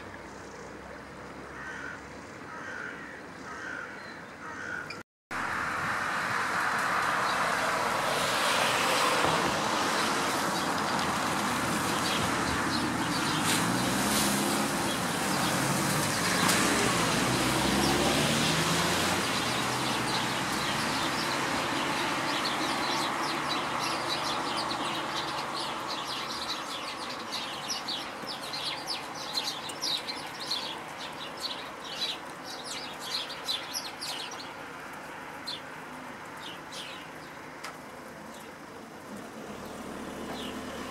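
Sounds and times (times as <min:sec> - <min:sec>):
steady road traffic: 0:00.0 - 0:40.9
passing vehicle engine: 0:05.4 - 0:28.1, 0:39.1 - 0:40.9
sparrows chirping: 0:09.7 - 0:37.5, 0:39.6 - 0:40.9.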